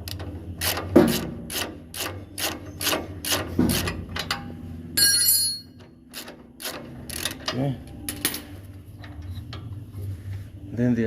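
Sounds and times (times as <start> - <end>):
ratchet wrench clicking: 0.1 - 3.5
ringing metallic clink: 5.0 - 5.8.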